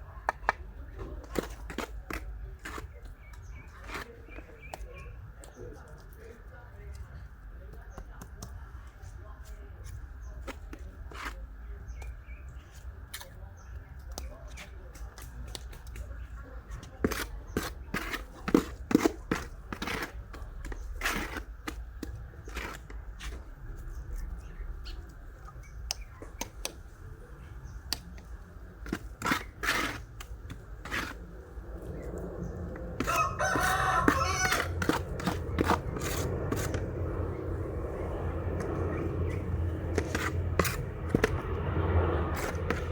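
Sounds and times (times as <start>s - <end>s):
low steady hum: 0.0s - 42.9s
rooster crowing: 33.0s - 35.0s.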